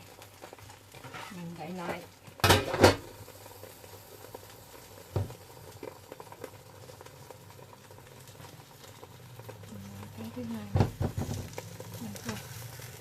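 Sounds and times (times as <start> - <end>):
batter sizzling in oil: 0.0 - 13.0
knock: 5.1 - 5.3, 10.7 - 11.5.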